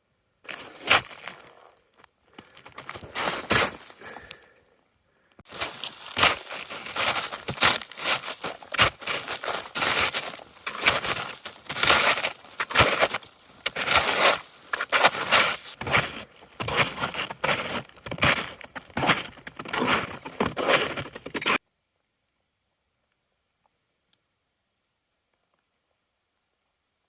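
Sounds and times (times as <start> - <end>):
footsteps crunching through snow: 0.5 - 1.8, 2.4 - 4.5, 5.5 - 21.6.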